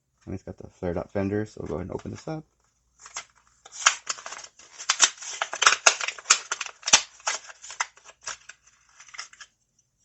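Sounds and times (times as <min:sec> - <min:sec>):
plastic and cardboard package crackling: 0:01.8 - 0:09.6.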